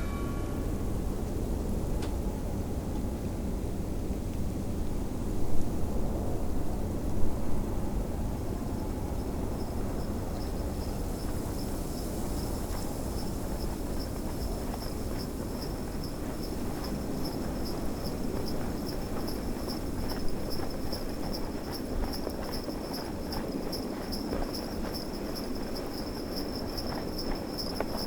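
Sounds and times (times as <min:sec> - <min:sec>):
snowstorm wind rushing: 0:00.7 - 0:28.0
sleigh bells jingling: 0:09.5 - 0:28.0.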